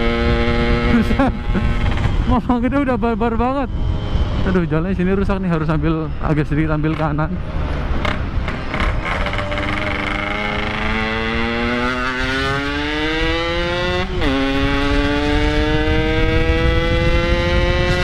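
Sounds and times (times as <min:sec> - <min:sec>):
motorcycle engine accelerating: 0:00.0 - 0:03.2, 0:07.8 - 0:18.0.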